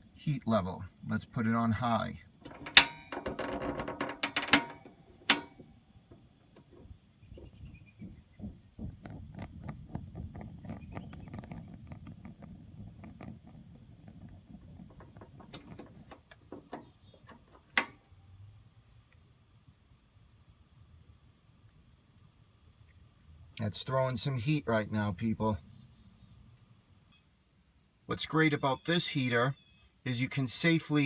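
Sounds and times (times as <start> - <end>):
heater knob sharp click: 2.4 - 3.1, 4.2 - 5.6.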